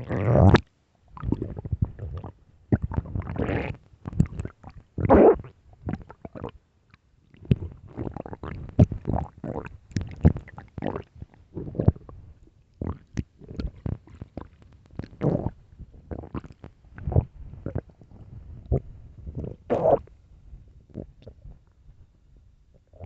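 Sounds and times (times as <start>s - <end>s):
stomach growling and gurgling: 0.0s - 23.0s.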